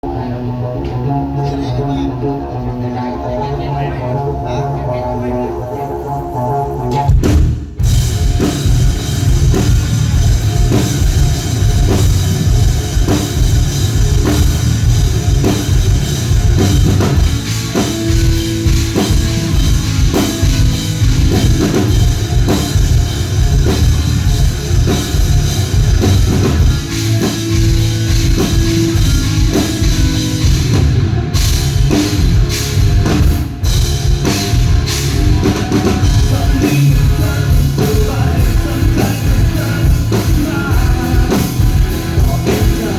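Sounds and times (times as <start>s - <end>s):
rock band playing: 0.0s - 42.9s
driving drum kit: 5.9s - 42.9s.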